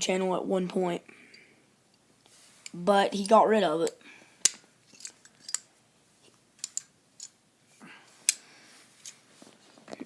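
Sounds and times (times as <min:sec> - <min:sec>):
multi-tool metal clicks: 0:03.8 - 0:05.7, 0:06.6 - 0:07.4.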